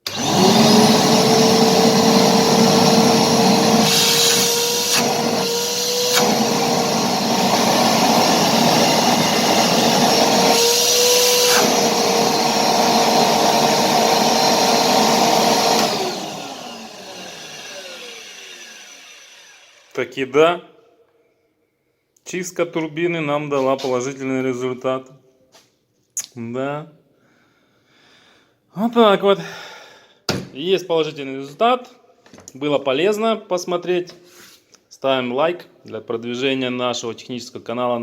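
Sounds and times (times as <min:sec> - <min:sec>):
vacuum cleaner whining: 0:00.0 - 0:20.0
motor winding down: 0:00.1 - 0:20.0.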